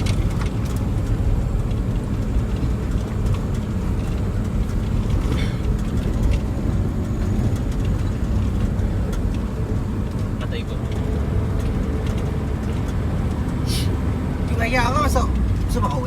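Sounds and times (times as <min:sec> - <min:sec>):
truck engine rumbling: 0:00.0 - 0:16.0.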